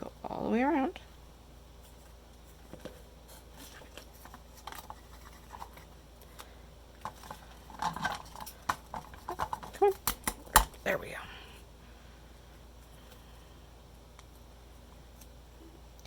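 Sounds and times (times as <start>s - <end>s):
taps and crackles: 7.0s - 10.8s.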